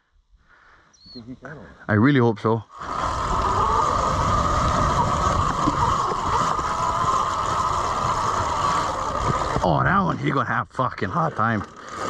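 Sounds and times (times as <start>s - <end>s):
electric motorbike motor whining: 2.7s - 10.4s, 11.2s - 12.0s
wind rumble on microphone: 2.8s - 10.2s.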